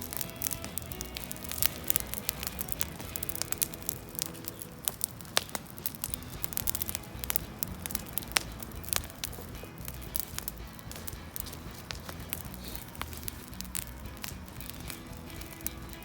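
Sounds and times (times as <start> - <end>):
burning leaves hissing: 0.0 - 16.0
wood fire crackling and popping: 0.0 - 16.0.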